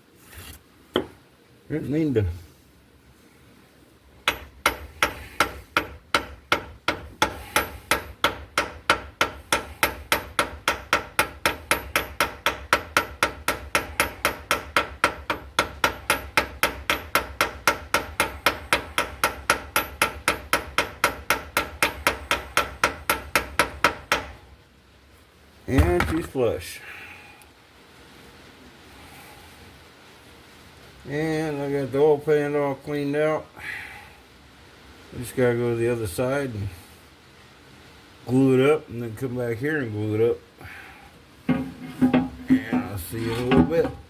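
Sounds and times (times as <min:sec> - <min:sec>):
hammer striking wooden block: 0:04.3 - 0:24.4.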